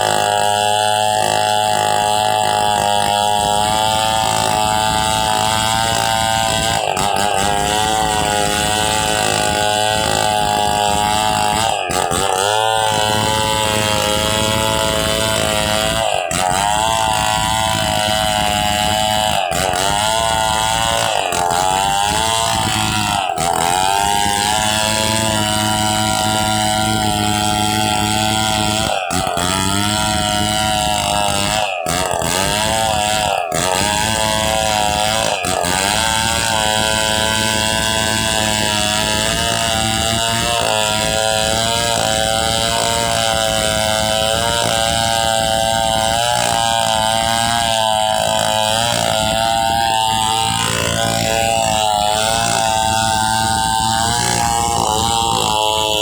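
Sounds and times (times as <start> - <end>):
chainsaw running at high revs: 0.0 - 56.0.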